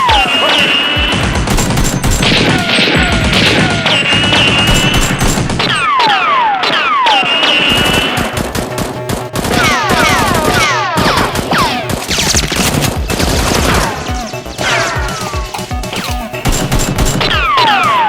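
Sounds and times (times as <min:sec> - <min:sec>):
machine-gun fire: 0:01.0 - 0:05.7, 0:07.8 - 0:18.0
background music: 0:08.2 - 0:18.0.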